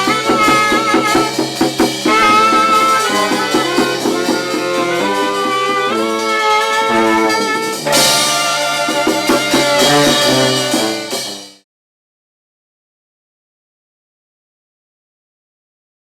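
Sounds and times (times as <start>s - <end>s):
brass band playing: 0.0s - 11.6s.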